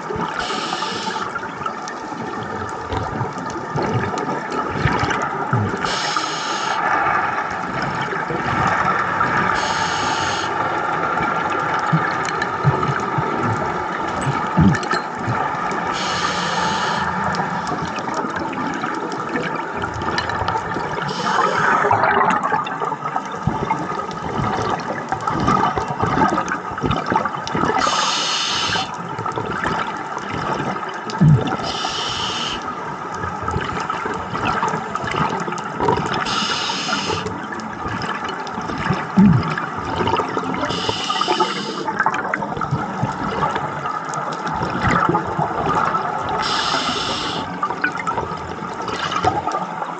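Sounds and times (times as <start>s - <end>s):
bubbling and gurgling underwater: 0.0s - 49.9s
regulator breathing hiss: 0.4s - 1.3s, 5.9s - 6.8s, 9.5s - 10.6s, 15.9s - 17.6s, 21.1s - 21.8s, 27.8s - 29.0s, 31.6s - 32.7s, 36.2s - 37.3s, 40.7s - 41.9s, 46.4s - 47.6s.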